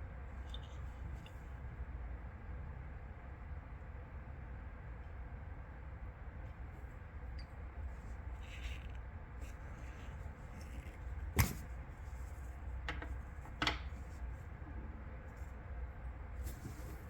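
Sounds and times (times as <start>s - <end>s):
low steady rumble: 0.0s - 17.0s
faint packaging rustle: 16.4s - 17.0s.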